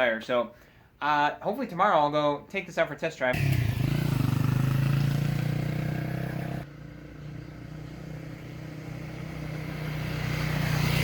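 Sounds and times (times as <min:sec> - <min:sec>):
vehicle engine humming: 0:03.4 - 0:11.0.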